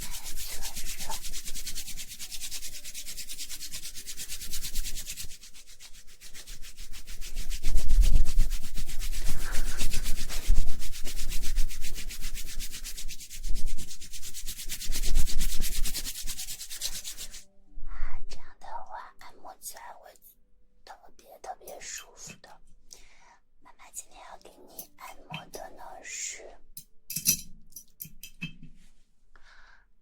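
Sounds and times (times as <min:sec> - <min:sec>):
hands rubbing together: 0:00.0 - 0:17.4.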